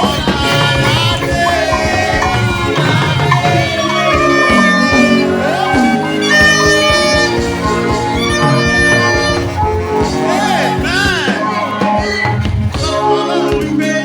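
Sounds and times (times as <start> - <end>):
keyboard playing held chords: 0.0 - 14.0.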